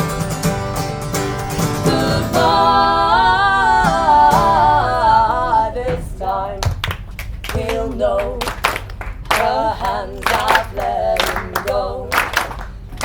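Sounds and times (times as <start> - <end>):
guitar strumming: 0.0 - 6.3
person singing long notes: 1.6 - 6.6.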